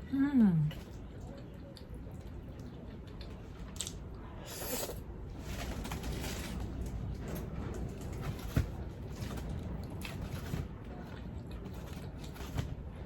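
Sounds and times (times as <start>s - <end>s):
chewing and wet mouth noises: 0.7s - 5.1s.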